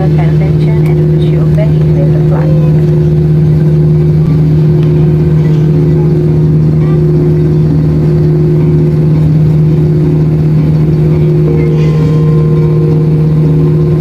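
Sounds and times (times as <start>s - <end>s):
airliner cabin drone: 0.0s - 14.0s.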